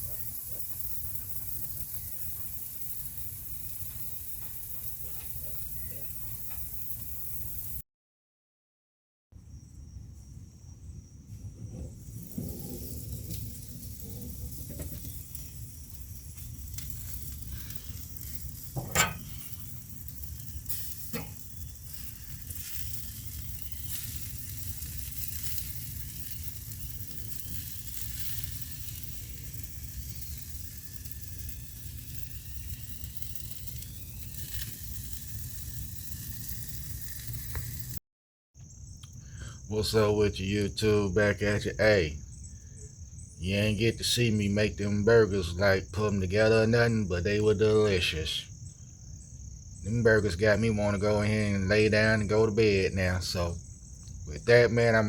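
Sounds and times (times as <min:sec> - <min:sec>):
food sizzling on a grill: 0:00.0 - 0:07.8, 0:11.9 - 0:38.0.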